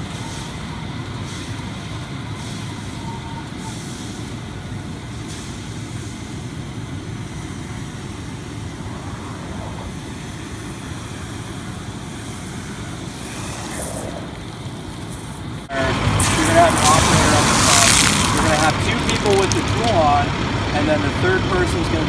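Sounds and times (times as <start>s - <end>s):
fire engine motor rumbling: 0.0s - 22.0s.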